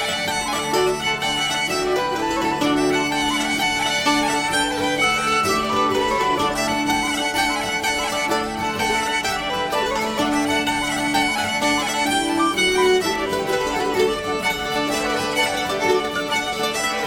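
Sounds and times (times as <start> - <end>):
instrumental background music: 0.0 - 17.0.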